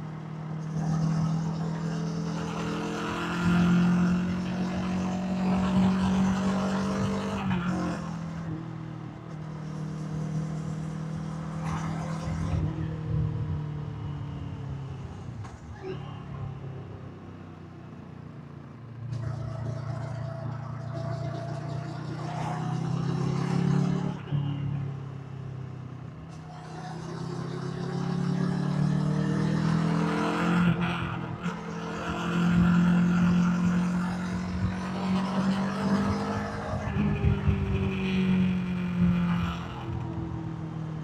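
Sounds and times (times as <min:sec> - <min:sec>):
motorcycle engine revving: 0:00.0 - 0:16.9, 0:18.7 - 0:41.0.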